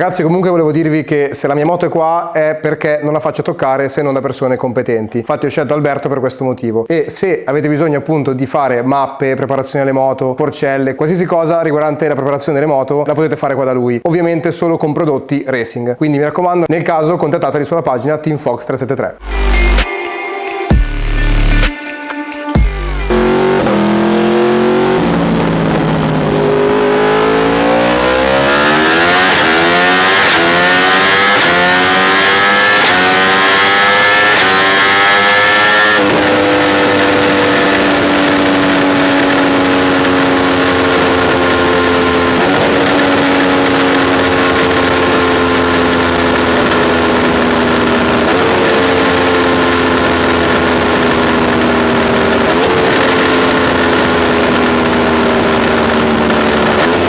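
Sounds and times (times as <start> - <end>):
motorcycle engine revving: 23.0 - 57.0.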